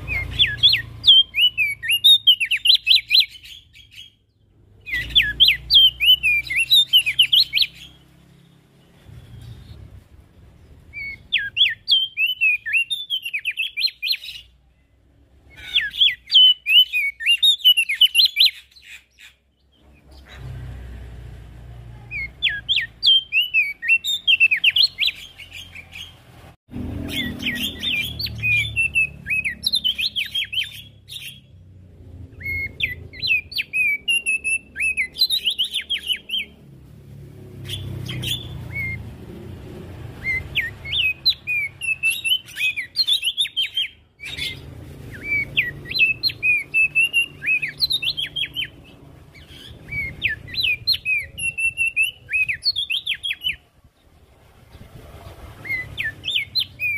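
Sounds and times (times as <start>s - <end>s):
bird chattering chirps: 0.0s - 10.0s, 10.6s - 14.8s, 15.4s - 20.5s, 27.0s - 31.6s, 32.2s - 36.6s, 37.6s - 39.1s, 40.2s - 53.6s.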